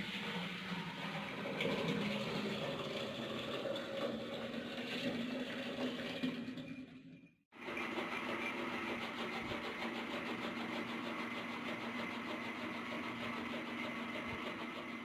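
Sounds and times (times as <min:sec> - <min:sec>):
engine running steadily: 0:07.6 - 0:15.0.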